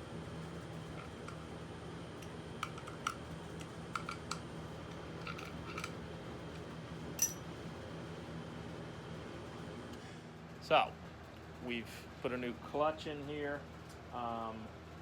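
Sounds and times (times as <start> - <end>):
steady low hum: 0.0 - 15.0
metal parts clicking and clinking: 2.6 - 3.2, 4.0 - 4.4, 5.2 - 6.0, 7.2 - 7.4
ringing metal clink: 7.2 - 7.4.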